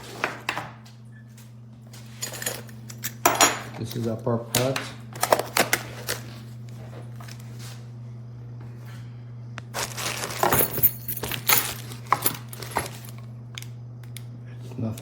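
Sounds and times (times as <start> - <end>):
packaging rustling: 9.7 - 13.3.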